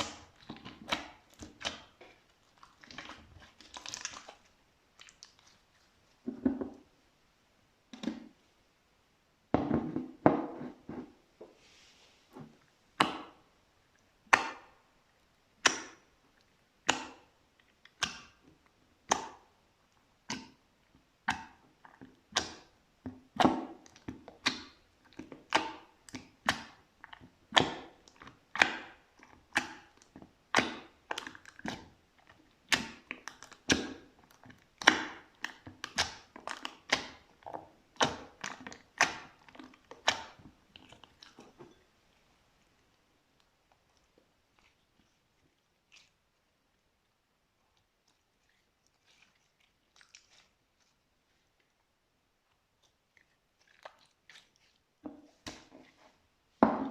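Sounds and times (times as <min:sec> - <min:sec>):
sticky slime pops and crackles: 0:23.3 - 0:40.4.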